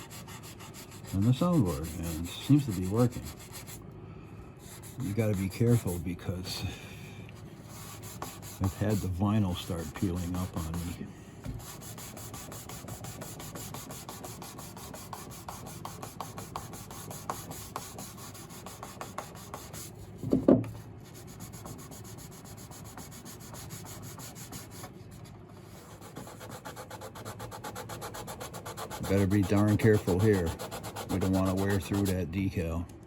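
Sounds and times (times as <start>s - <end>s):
sandpaper rubbing on hard finish: 0.0s - 3.8s, 4.6s - 6.0s, 7.6s - 11.0s, 11.6s - 19.9s, 21.2s - 24.9s, 25.6s - 32.2s
knock: 20.2s - 20.7s.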